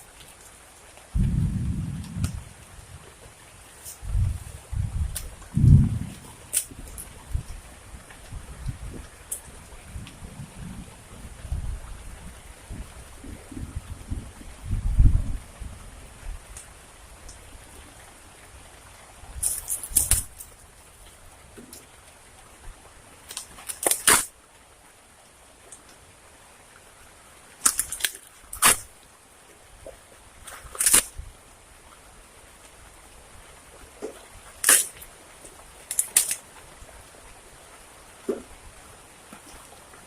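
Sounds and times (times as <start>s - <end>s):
rain hissing: 0.0s - 40.0s
sharp cracks or knocks: 19.4s - 20.5s, 23.3s - 24.3s, 27.6s - 28.9s, 30.5s - 31.1s, 34.0s - 35.0s.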